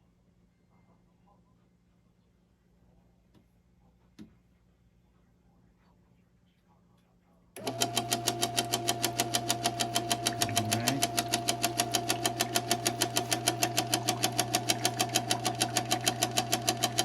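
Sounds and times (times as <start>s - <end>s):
ice maker knocking: 7.6s - 17.0s
steady motor hum: 7.6s - 17.0s.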